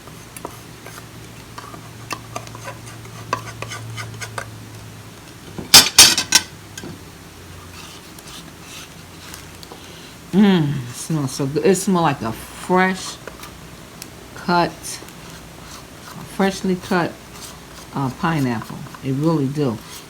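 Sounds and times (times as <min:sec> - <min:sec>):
utensil scraping grinder container: 0:15.1 - 0:20.0.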